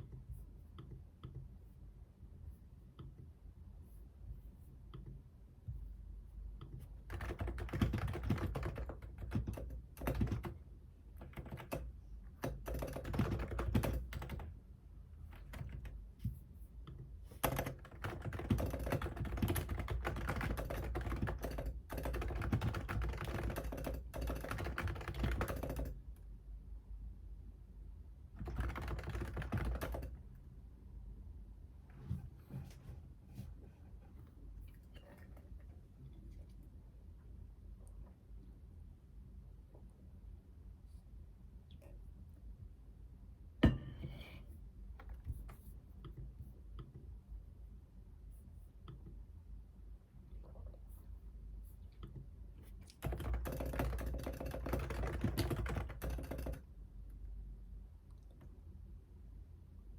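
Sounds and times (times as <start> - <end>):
computer keyboard typing: 7.0 - 10.6, 11.2 - 14.6, 15.3 - 16.0, 17.4 - 26.0, 28.4 - 30.2, 52.8 - 56.7.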